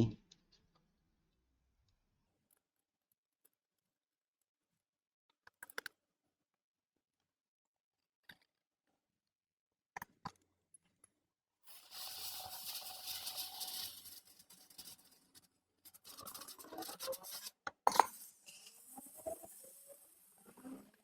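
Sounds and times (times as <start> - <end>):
scratchy rubbing on circuit board: 11.7 - 21.0.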